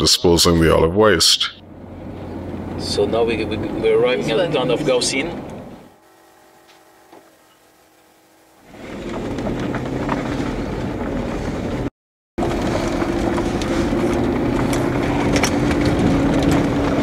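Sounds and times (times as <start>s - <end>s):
low mechanical hum: 1.6s - 17.0s
rattling clicks: 13.2s - 17.0s.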